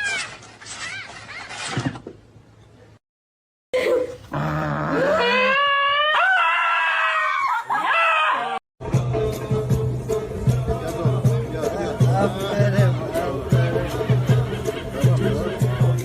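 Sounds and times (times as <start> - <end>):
music: 8.8 - 16.0.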